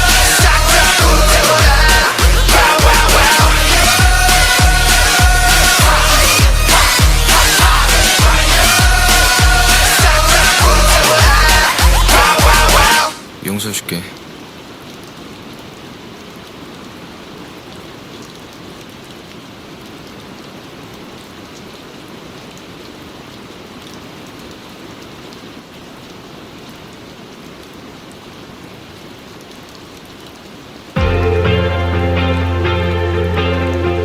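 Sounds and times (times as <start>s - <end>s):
steady rain falling: 0.0s - 34.0s.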